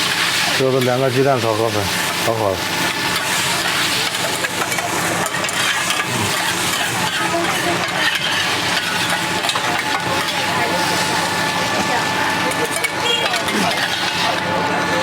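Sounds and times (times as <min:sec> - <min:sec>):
food sizzling: 0:00.0 - 0:15.0
metal spatula scraping plate: 0:03.0 - 0:10.3.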